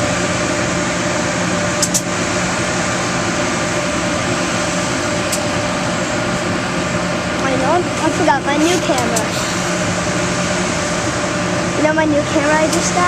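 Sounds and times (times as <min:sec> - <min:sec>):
steady mechanical hum: 0:00.0 - 0:13.0.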